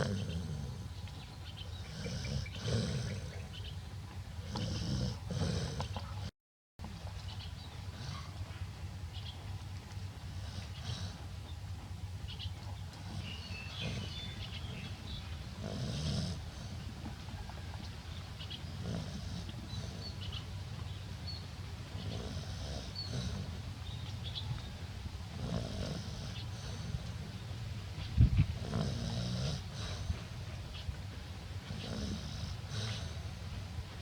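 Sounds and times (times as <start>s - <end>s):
woman snoring: 1.9s - 3.3s.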